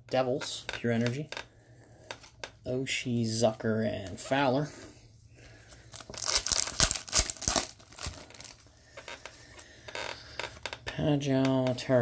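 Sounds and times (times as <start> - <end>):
foil wrapper tearing and crinkling: 5.9 - 8.7.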